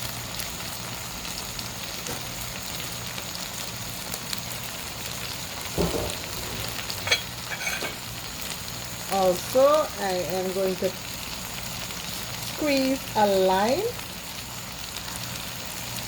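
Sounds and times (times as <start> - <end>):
food sizzling in a pan: 0.0 - 16.0
dull knock: 5.8 - 6.8.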